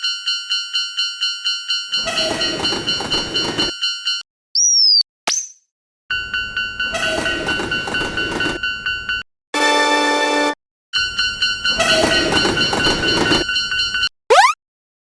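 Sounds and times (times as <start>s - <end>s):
railroad crossing bell ringing: 6.1s - 12.4s.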